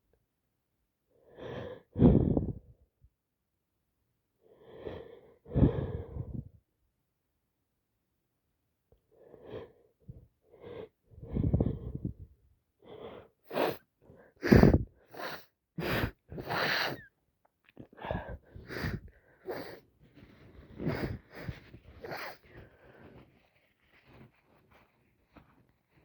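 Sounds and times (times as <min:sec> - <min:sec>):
wheezy breaths: 0:01.3 - 0:02.8, 0:04.5 - 0:06.5, 0:09.2 - 0:17.1, 0:17.8 - 0:23.6.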